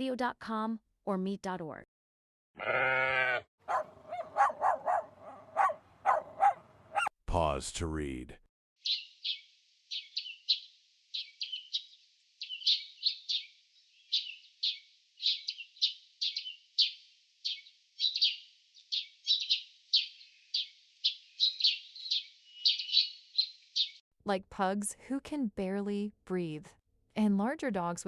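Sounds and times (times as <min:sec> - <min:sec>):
birds chirping: 0:03.7 - 0:07.1, 0:08.8 - 0:24.0.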